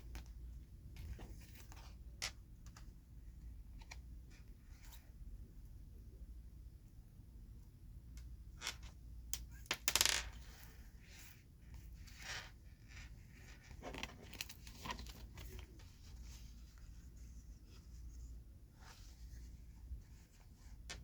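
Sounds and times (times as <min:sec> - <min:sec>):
cards being handled: 0:09.4 - 0:18.1.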